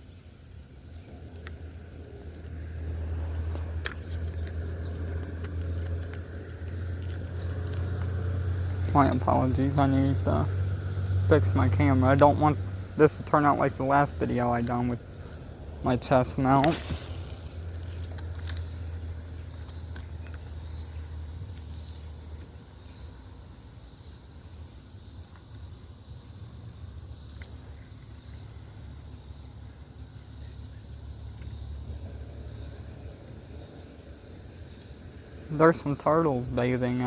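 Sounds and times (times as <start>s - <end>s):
low river rumble: 1.0s - 19.3s
faint hiss: 9.0s - 19.8s.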